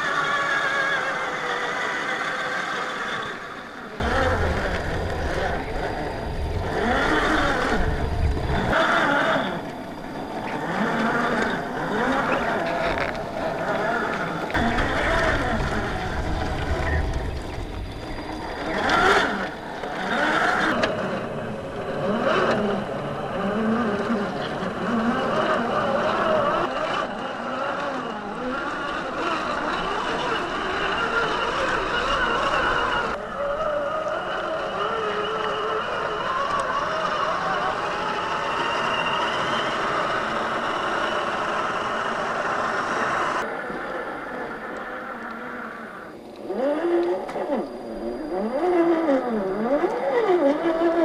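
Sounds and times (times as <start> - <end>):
electric motor whining: 0.0 - 51.0
low rumble: 4.0 - 23.4.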